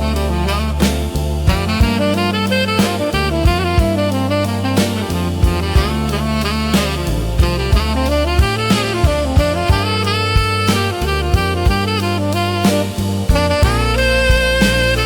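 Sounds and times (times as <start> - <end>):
slow blues instrumental: 0.0 - 15.0.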